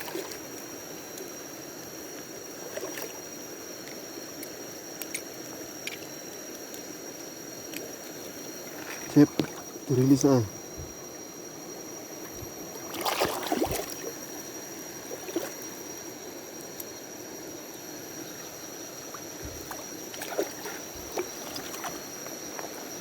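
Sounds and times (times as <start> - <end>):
stream flowing: 8.1 - 10.4, 12.8 - 14.2
water splashing: 8.6 - 9.8, 12.9 - 14.1, 15.1 - 15.6, 19.5 - 22.0.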